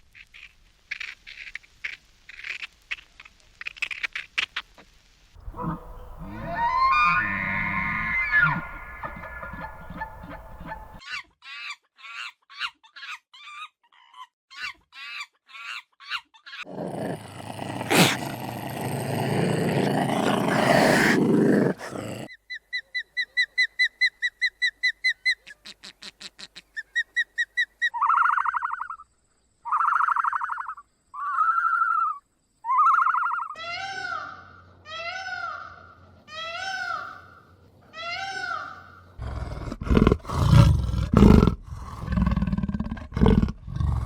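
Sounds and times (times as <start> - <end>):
animal roaring: 5.4 - 11.0, 16.7 - 22.3, 39.2 - 44.0
short animal calls: 5.4 - 11.0
animal chirps: 5.4 - 12.3, 26.8 - 29.0, 29.6 - 34.2.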